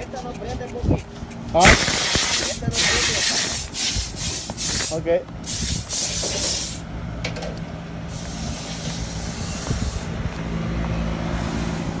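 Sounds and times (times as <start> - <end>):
compressed air hissing: 1.2 - 6.9, 8.1 - 10.3, 11.3 - 12.0.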